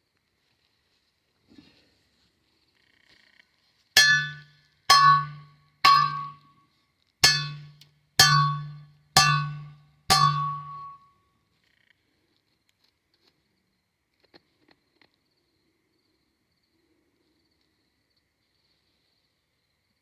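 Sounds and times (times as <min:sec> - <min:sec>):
metal post driver clanging: 0:04.0 - 0:06.4, 0:07.2 - 0:11.0.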